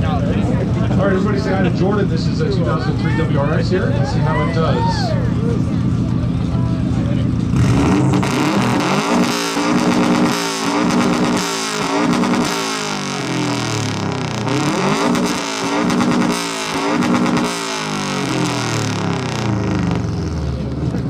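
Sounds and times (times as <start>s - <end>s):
car engine revving: 5.2s - 21.0s.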